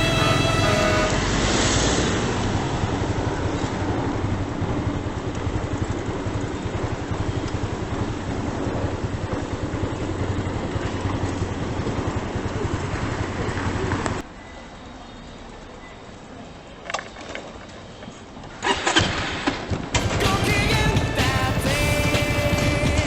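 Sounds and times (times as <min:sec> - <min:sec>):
scooter engine running: 0:00.0 - 0:01.3, 0:02.5 - 0:14.2, 0:20.0 - 0:23.0
street noise hiss: 0:00.0 - 0:23.0.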